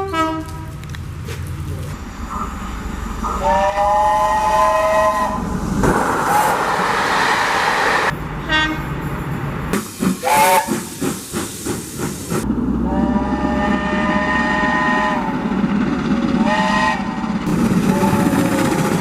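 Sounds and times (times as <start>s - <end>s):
train rolling past: 0.0s - 19.0s
train horn chord: 3.4s - 5.4s, 8.4s - 8.9s, 12.8s - 15.3s, 17.8s - 18.7s.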